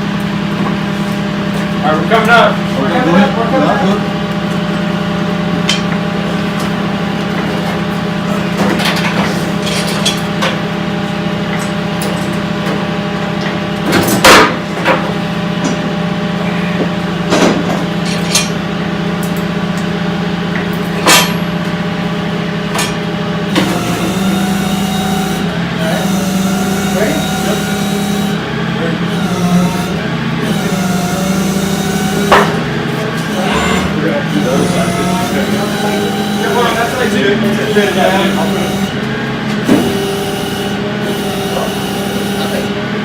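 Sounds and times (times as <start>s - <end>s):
tow truck engine running: 0.0s - 43.0s.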